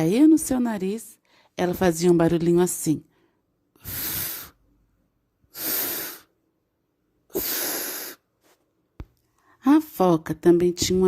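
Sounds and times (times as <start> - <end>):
woman making hissing f sound: 3.8 - 4.6, 5.5 - 6.3, 7.3 - 8.3.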